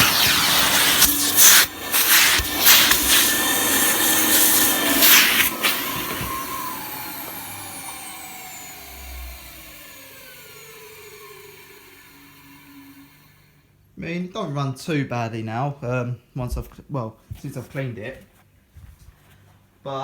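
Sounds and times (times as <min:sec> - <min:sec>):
motor winding down whine: 0:00.0 - 0:13.6
vacuum cleaner running: 0:00.0 - 0:13.7.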